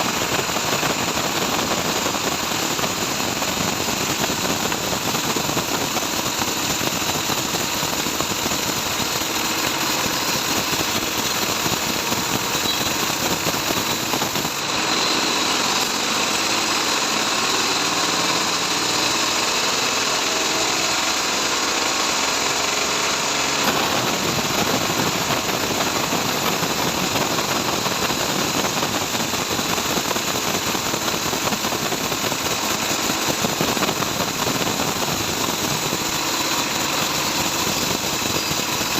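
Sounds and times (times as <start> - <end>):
band saw cutting wood: 7.7 - 26.7.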